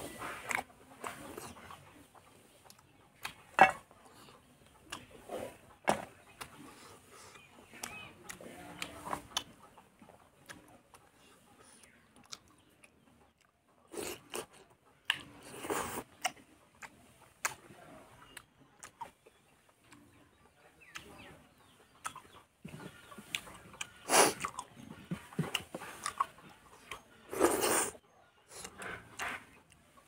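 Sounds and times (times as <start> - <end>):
person chewing and biting: 12.2 - 17.6, 23.3 - 26.3.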